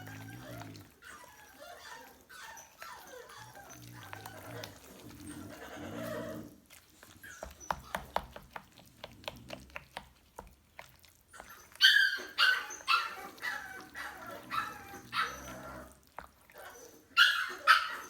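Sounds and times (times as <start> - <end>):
dog barking and yipping: 11.4 - 15.9, 16.6 - 18.0.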